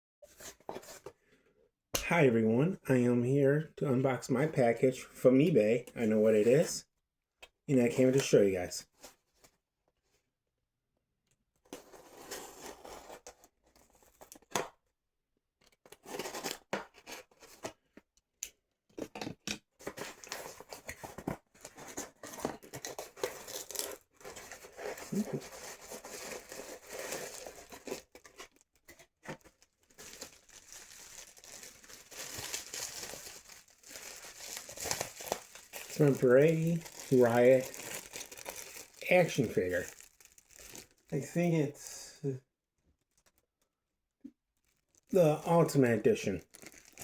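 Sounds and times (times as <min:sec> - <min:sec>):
wrapping crinkling: 0:19.8 - 0:41.4, 0:46.3 - 0:47.0
package being torn open: 0:22.2 - 0:28.6, 0:29.3 - 0:41.1, 0:46.5 - 0:47.0.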